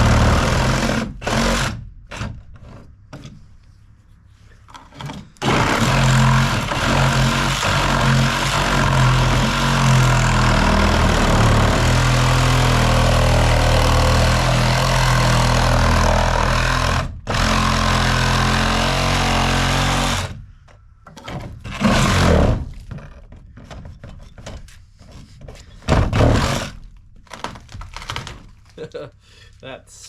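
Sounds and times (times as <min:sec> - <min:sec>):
power tool running: 0:00.0 - 0:01.8, 0:05.4 - 0:20.4
working noise: 0:00.0 - 0:28.8.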